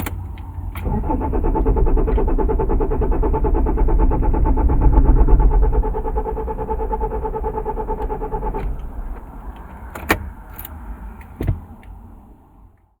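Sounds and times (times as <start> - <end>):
car engine cranking: 0.0 - 12.0
thump: 11.4 - 11.7.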